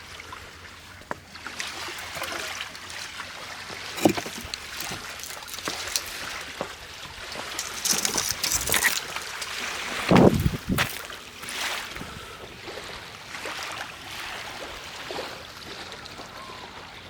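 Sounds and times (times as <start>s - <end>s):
short crunches and knocks: 4.0s - 6.4s, 7.6s - 11.1s
river waves lapping on shoreline: 9.0s - 17.0s.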